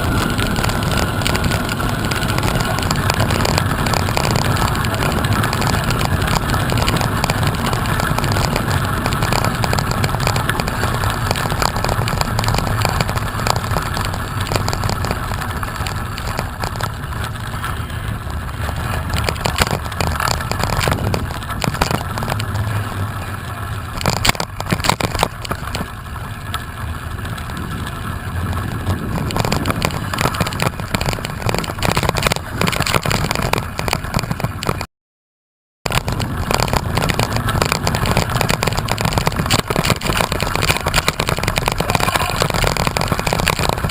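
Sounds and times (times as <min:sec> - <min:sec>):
wind and road noise: 0:00.0 - 0:34.9, 0:35.8 - 0:43.9
clicks: 0:18.6 - 0:22.6, 0:23.9 - 0:25.9.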